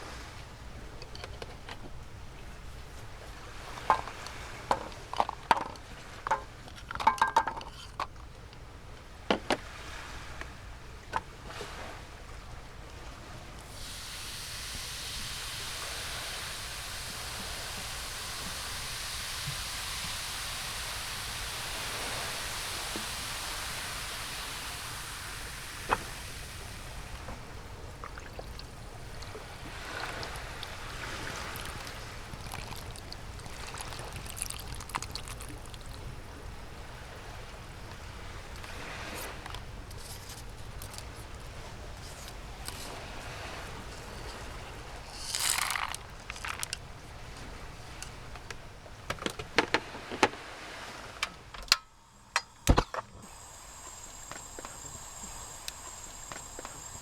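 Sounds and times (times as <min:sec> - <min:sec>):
dishes clinking: 0:06.3 - 0:08.0
water running: 0:13.6 - 0:50.3, 0:51.1 - 0:57.0.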